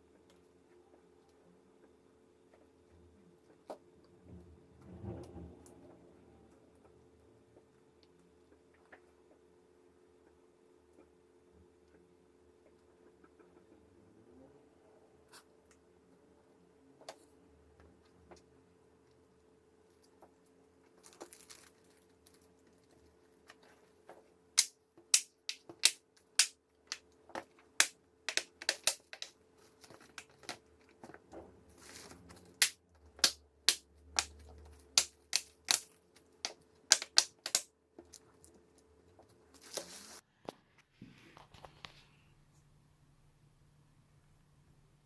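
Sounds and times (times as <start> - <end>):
plastic laptop parts clicking: 24.6 - 30.6.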